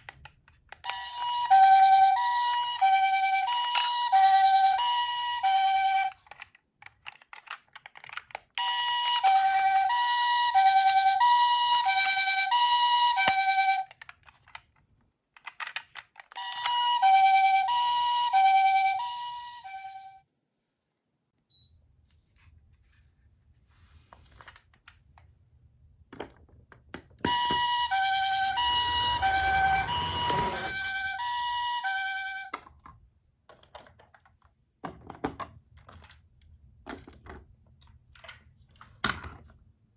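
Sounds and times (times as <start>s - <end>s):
toy two-tone siren: 0.8s - 6.2s, 8.6s - 14.0s, 16.3s - 20.2s, 27.3s - 32.6s.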